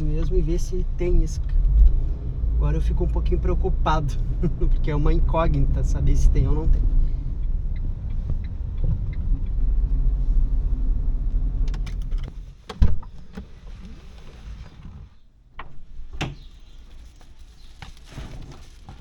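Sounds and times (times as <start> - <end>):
car rumble from inside cabin: 0.0 - 16.2.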